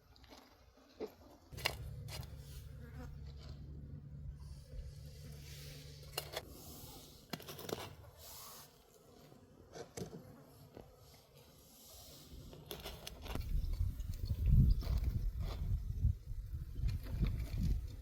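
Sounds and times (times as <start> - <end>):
low hum: 1.6 - 6.5.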